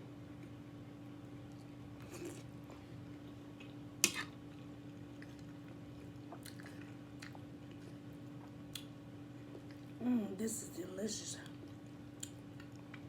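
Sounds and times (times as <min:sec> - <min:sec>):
faint steady hum: 0:00.0 - 0:13.0
person chewing close up: 0:01.5 - 0:10.0, 0:11.6 - 0:13.0.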